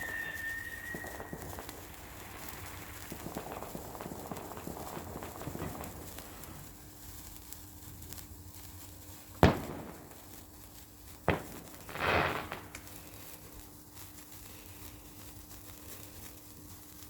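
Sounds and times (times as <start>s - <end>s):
fireworks banging: 0.0s - 17.0s
fireworks crackling: 0.0s - 17.0s.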